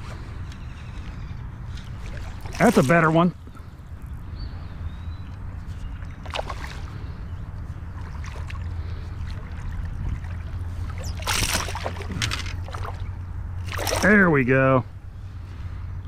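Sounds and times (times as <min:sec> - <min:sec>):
water sloshing against hull: 0:00.0 - 0:15.8
steady low rumble: 0:00.0 - 0:16.0
fish splashing at surface: 0:10.9 - 0:13.0, 0:13.6 - 0:14.2.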